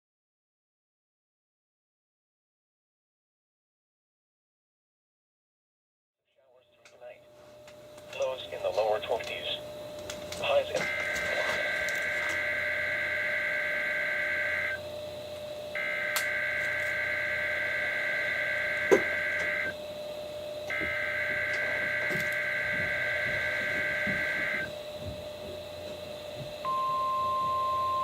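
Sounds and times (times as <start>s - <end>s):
two-tone digital screech: 15.8s - 19.7s, 20.7s - 24.7s.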